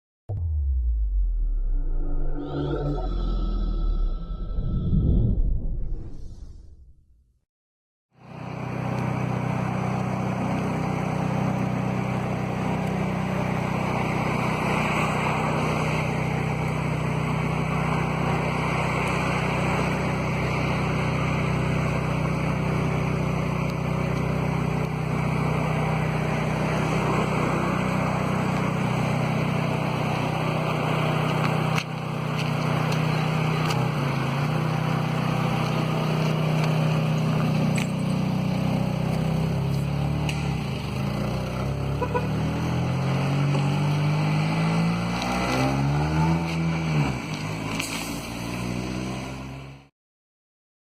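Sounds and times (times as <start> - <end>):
car engine running: 0.3 - 4.4, 8.2 - 44.2.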